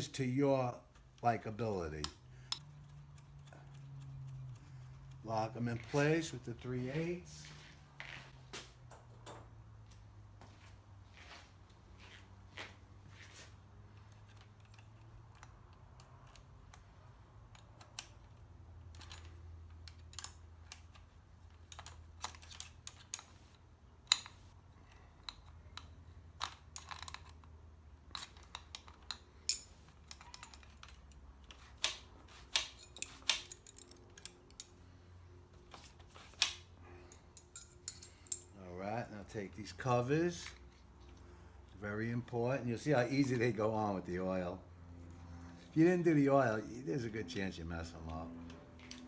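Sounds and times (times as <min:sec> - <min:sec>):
wrench clicking on metal nuts: 0:02.0 - 0:06.0, 0:14.1 - 0:23.3, 0:24.0 - 0:34.8, 0:36.2 - 0:38.5.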